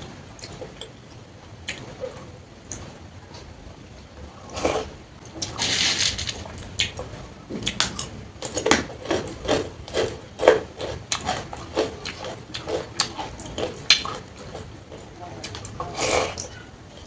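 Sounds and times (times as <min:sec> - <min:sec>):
chewing and wet mouth smacks: 0:06.8 - 0:15.8.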